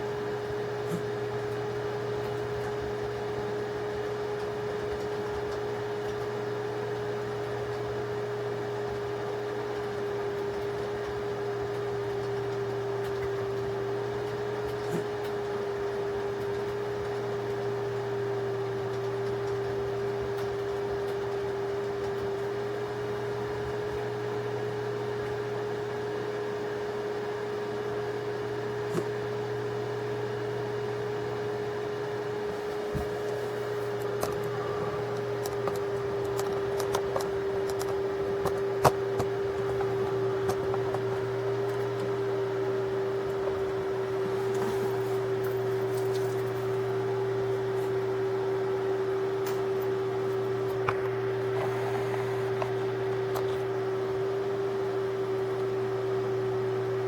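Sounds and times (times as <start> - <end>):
steady hum: 0.0 - 57.0
low background drone: 32.2 - 55.6.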